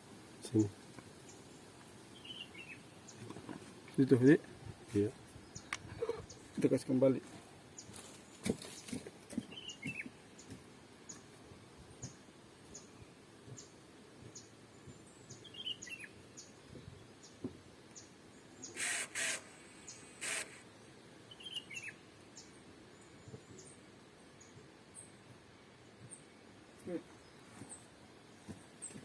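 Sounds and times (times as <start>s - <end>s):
bird chirping: 1.2s - 3.3s, 7.7s - 11.3s, 12.0s - 25.2s.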